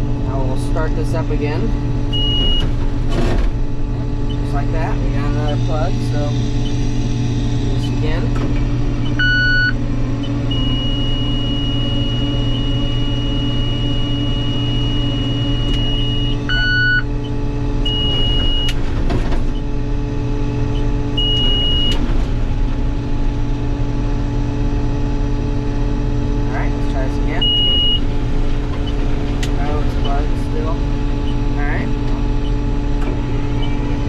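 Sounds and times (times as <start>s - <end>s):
combine engine running: 0.0s - 34.0s
cab warning alarm tone: 0.4s - 19.8s, 20.6s - 22.2s, 26.5s - 34.0s
short beeps: 9.0s - 17.0s, 27.4s - 28.0s.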